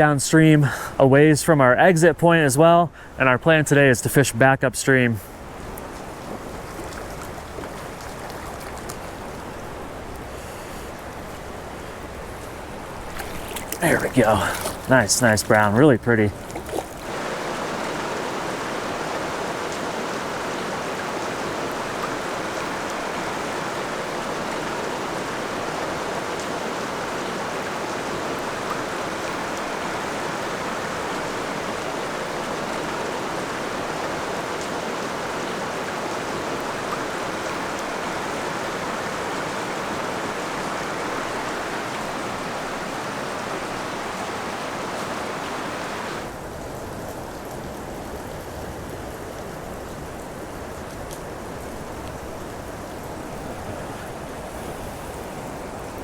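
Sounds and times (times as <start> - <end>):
river rushing through rapids: 16.4 - 46.4.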